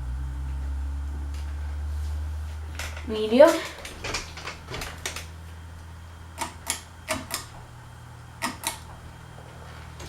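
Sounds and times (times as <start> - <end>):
ceiling fan motor humming: 0.0 - 10.0
sharp clicks: 6.4 - 7.5, 8.4 - 8.9.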